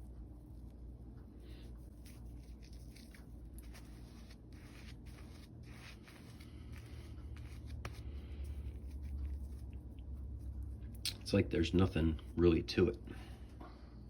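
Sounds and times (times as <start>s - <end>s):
low steady hum: 0.0s - 14.0s
shaving brush working lather: 1.9s - 8.2s.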